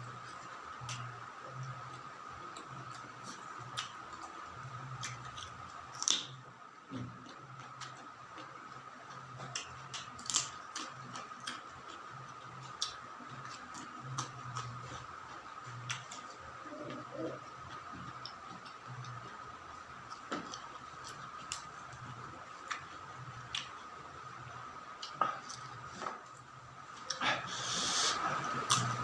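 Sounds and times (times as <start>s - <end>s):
faint high hum: 0.0s - 29.0s
chewing with wet clicks: 0.8s - 16.4s, 17.6s - 23.9s
crunchy snaps of biting: 4.9s - 8.5s, 9.1s - 12.1s, 28.6s - 29.0s.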